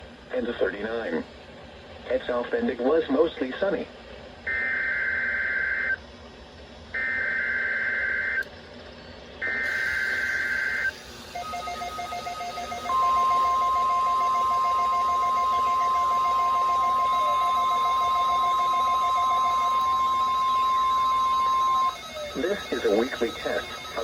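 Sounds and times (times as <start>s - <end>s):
loud steady warning alarm tone: 4.5s - 6.0s, 7.0s - 8.5s, 9.4s - 24.0s
faint pulsing beep: 9.0s - 24.0s
warbling digital data screech: 9.4s - 24.0s.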